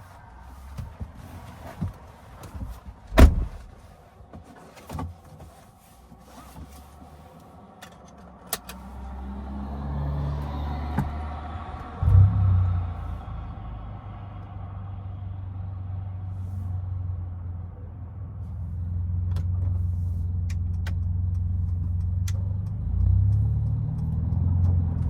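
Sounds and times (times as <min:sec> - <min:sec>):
car door thumping shut: 0:03.1 - 0:03.8
car engine starting: 0:06.4 - 0:25.0.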